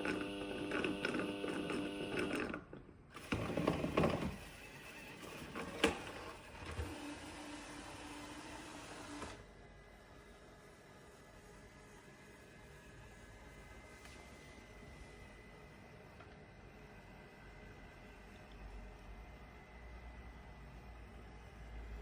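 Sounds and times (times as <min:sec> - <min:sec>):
robot vacuum motor hum: 0:03.2 - 0:09.4.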